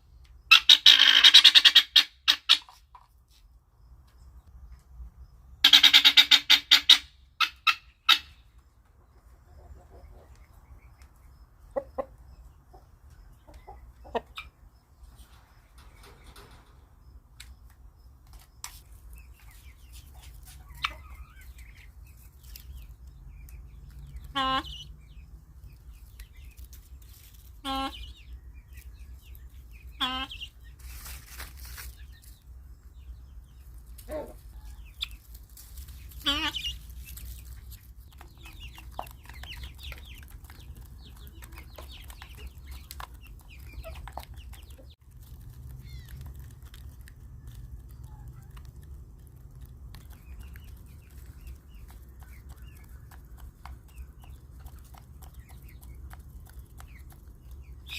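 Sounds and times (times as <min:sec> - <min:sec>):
guinea fowl calling: 0:00.5 - 0:02.9, 0:05.6 - 0:08.5, 0:20.6 - 0:21.6, 0:29.9 - 0:30.6, 0:34.0 - 0:35.2, 0:36.1 - 0:36.9.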